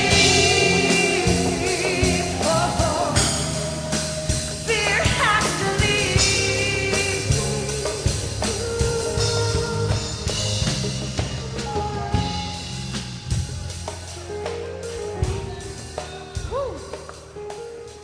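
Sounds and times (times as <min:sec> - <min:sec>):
person singing: 0:00.0 - 0:12.8
gospel band playing: 0:00.0 - 0:18.0.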